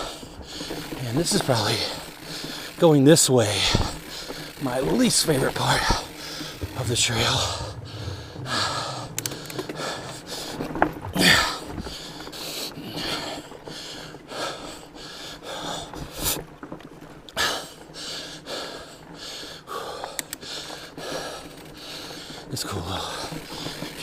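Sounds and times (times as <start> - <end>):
person panting: 0.0 - 2.8, 3.6 - 4.7, 5.7 - 16.4, 17.4 - 24.0
bike knocking on rocks: 0.1 - 13.8.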